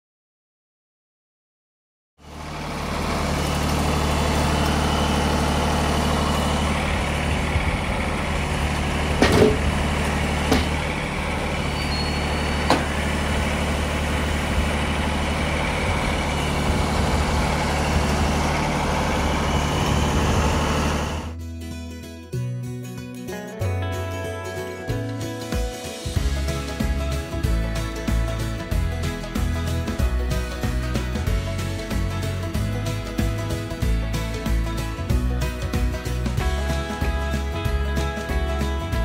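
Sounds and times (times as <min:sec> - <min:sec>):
sawmill engine running: 0:02.2 - 0:21.4, 0:24.0 - 0:39.0
sharp knocks: 0:09.2 - 0:09.8, 0:10.4 - 0:10.9, 0:12.6 - 0:13.0.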